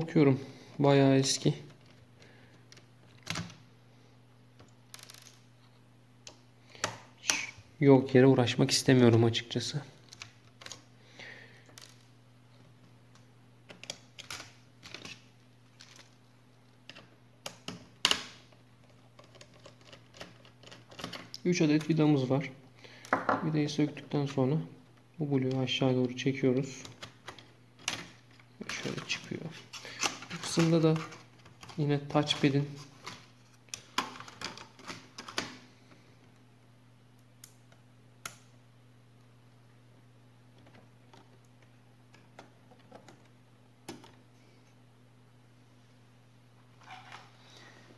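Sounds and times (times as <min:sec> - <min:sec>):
low steady hum: 0:00.0 - 0:47.9
plastic laptop parts clicking: 0:10.0 - 0:10.8, 0:16.9 - 0:21.4
plastic parts clattering: 0:27.0 - 0:35.6.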